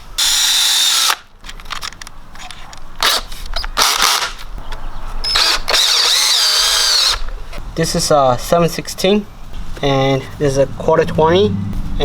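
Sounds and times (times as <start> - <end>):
power drill drilling pipe: 0.2 - 1.2, 3.8 - 4.4, 5.3 - 7.2.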